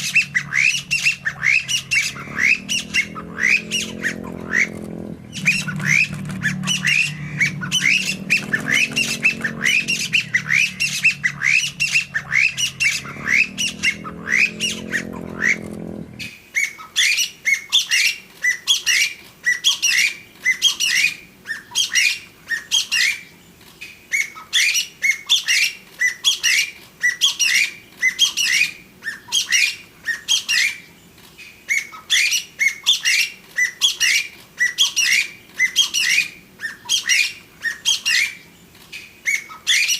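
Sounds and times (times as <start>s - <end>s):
low hum: 0.0s - 16.3s
partridge calling: 0.0s - 18.1s.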